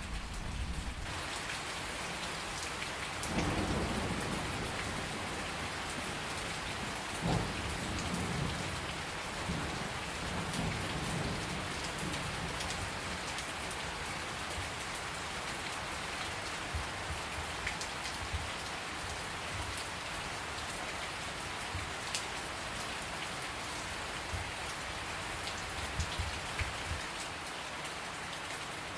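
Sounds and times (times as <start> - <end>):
low thunder rumble: 0.0 - 1.2
steady rain pouring: 0.0 - 28.9.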